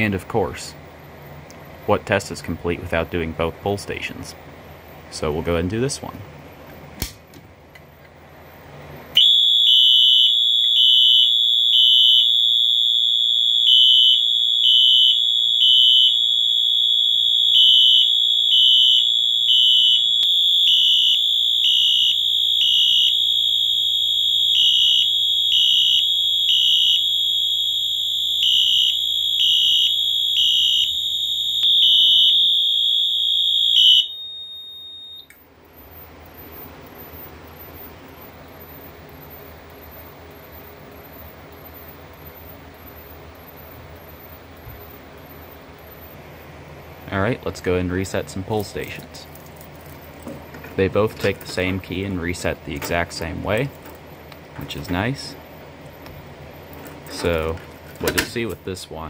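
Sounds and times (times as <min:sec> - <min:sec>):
alarm beeps: 0:09.2 - 0:46.2
high steady alarm tone: 0:09.2 - 0:46.3.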